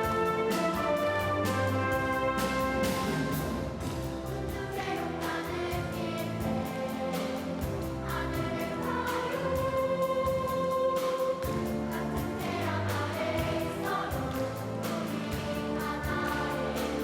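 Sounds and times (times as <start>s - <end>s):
children's choir singing: 0.0s - 17.0s.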